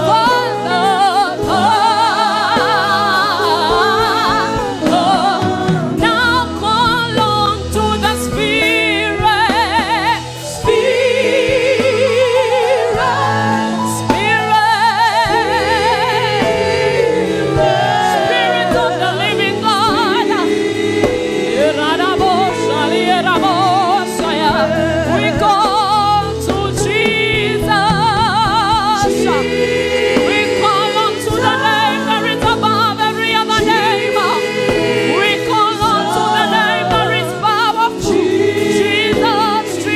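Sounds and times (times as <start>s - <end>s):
voices singing gospel: 0.0s - 39.9s.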